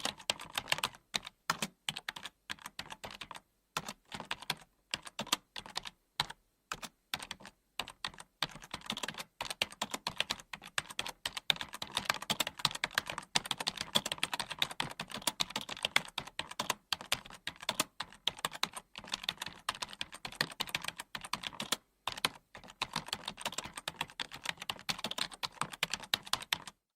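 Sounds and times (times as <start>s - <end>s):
computer keyboard typing: 0.0s - 26.9s.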